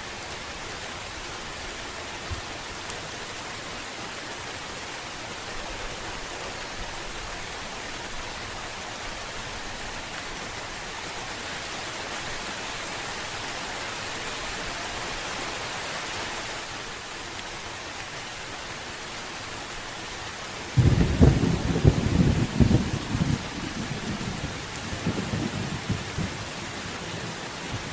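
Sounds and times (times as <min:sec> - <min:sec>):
rain hissing: 0:00.0 - 0:27.9
thunder crack and rumble: 0:20.8 - 0:26.6.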